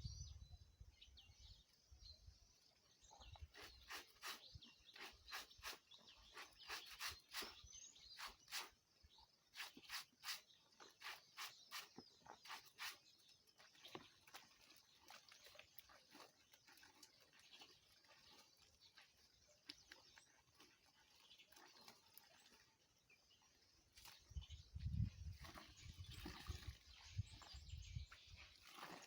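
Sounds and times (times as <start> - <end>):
clothes rustling in water: 9.6 - 29.0.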